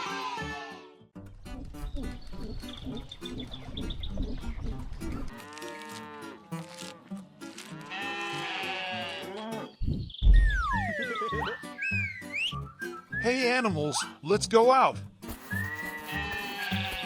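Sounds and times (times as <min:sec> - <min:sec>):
light background music: 0:00.0 - 0:09.7, 0:10.3 - 0:17.0
loud low thud: 0:09.9 - 0:10.7.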